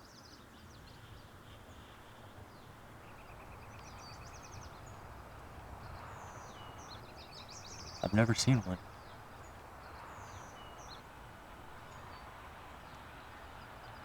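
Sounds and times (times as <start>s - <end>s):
birds chirping: 0.0s - 14.0s
outdoor background noise: 0.0s - 14.0s.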